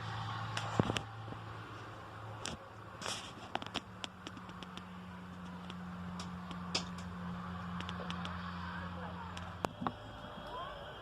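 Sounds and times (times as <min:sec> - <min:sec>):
bonfire crackling and popping: 0:02.4 - 0:08.6.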